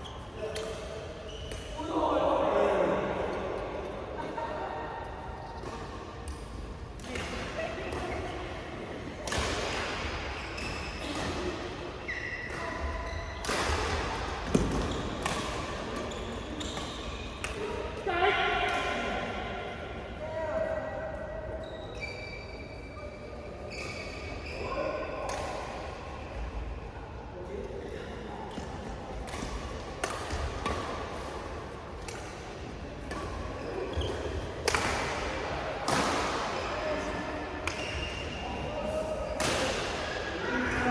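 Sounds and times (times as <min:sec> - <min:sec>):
shoes squeaking on court floor: 0:01.2 - 0:01.8, 0:12.0 - 0:13.5, 0:14.5 - 0:17.4, 0:21.6 - 0:24.8, 0:33.1 - 0:34.6
racket hitting shuttlecock: 0:09.2 - 0:11.6, 0:13.4 - 0:17.8, 0:28.5 - 0:31.1, 0:32.0 - 0:36.6, 0:37.5 - 0:38.2, 0:39.3 - 0:40.2.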